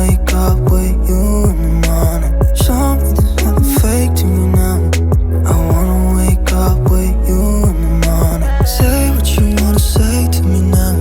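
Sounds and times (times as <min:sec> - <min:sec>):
rhythm and blues music: 0:00.0 - 0:11.0.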